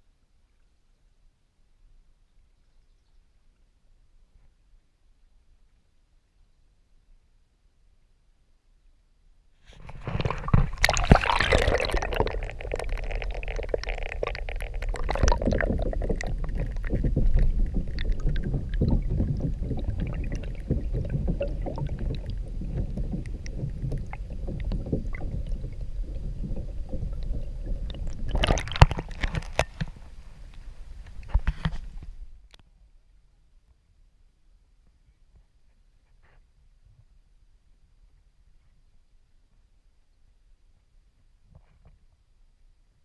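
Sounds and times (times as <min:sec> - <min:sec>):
paddle strokes splashing: 0:09.7 - 0:30.5
low rumble on microphone: 0:09.7 - 0:32.5.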